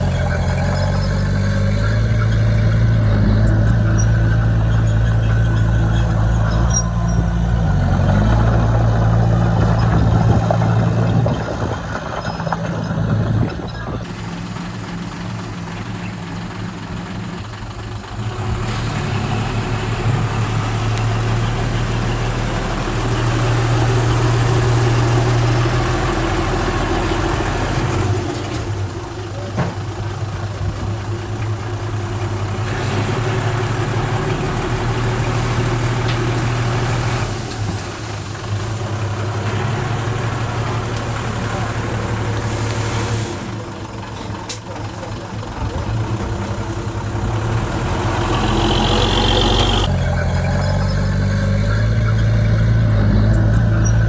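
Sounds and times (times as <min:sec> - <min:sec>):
heavy machinery diesel engines: 0:00.0 - 0:54.0
engine with hiss: 0:31.9 - 0:45.7.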